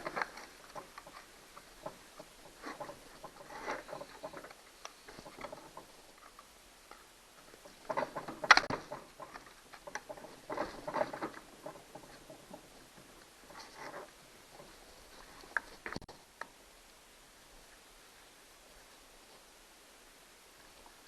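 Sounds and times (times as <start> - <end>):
chainsaw parts clicking and rattling: 0.0 - 6.4, 7.8 - 12.7.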